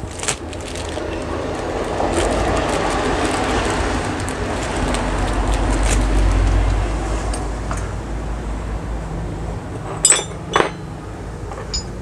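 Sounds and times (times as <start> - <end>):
metal parts clinking: 9.8 - 10.9, 11.5 - 12.0.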